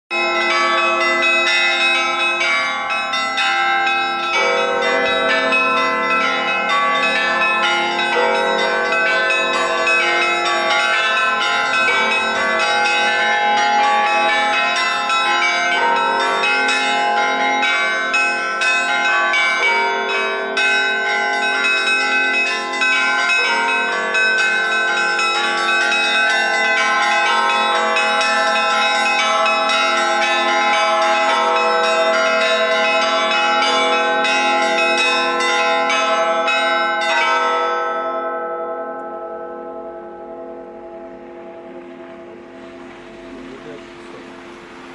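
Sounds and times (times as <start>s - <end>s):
church bells pealing: 0.1s - 44.9s.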